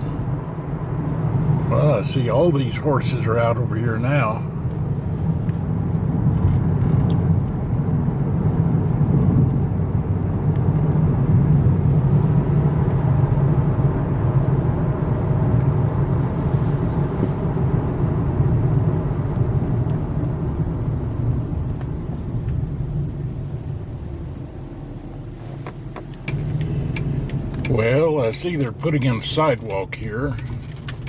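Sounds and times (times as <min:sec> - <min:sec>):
car engine and road rumble: 0:00.0 - 0:31.0.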